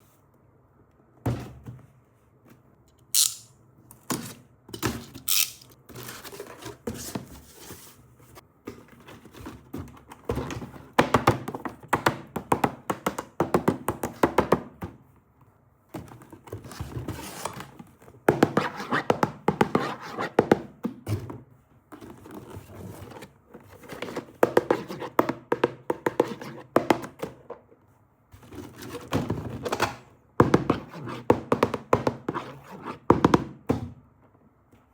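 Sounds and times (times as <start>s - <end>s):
packaging rustling and scraping: 4.1s - 10.0s, 28.4s - 29.7s.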